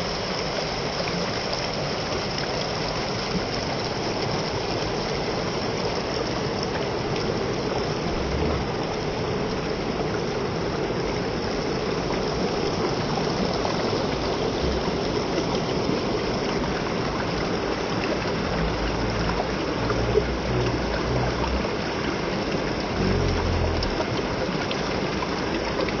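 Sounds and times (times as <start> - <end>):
waterfall rushing: 0.0 - 26.0
low rumbles: 7.5 - 9.3, 17.4 - 24.6.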